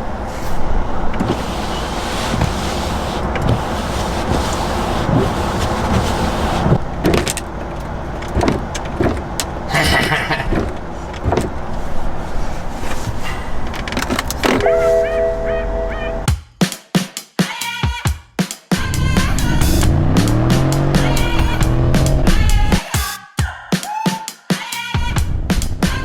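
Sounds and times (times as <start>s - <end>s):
car road and engine noise: 0.0s - 16.3s, 18.8s - 22.8s, 25.2s - 26.0s
car knocks and bumps: 1.1s - 14.7s
steady tones: 14.6s - 16.3s.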